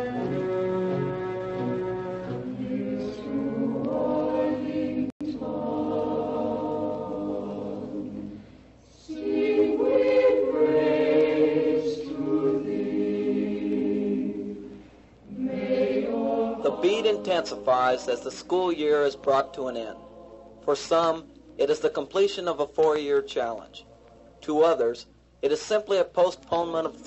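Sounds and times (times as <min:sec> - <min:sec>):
choir singing held chords: 0:00.0 - 0:22.6
singers breathing: 0:08.2 - 0:09.2.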